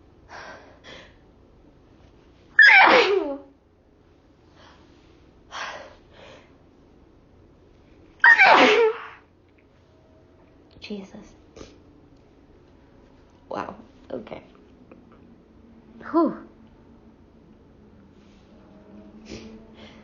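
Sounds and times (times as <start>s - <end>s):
woman sneezing loudly: 2.6s - 3.4s, 8.2s - 9.2s.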